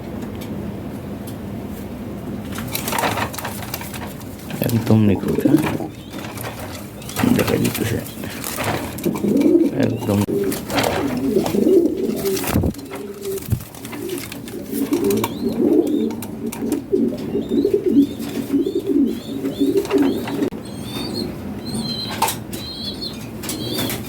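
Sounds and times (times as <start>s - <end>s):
pigeons cooing: 2.8s - 24.0s.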